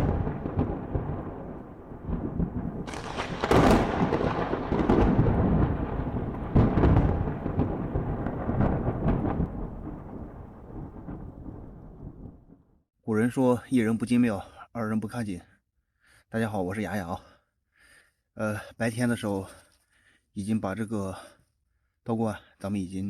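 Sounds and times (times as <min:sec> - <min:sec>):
sharp thunder cracks: 0:00.0 - 0:12.6
thunder rumbling: 0:00.0 - 0:12.7.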